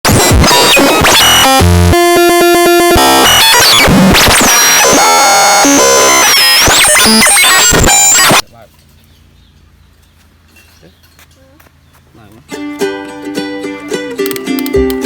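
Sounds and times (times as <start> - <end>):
chaotic electronic music: 0.0 - 8.4.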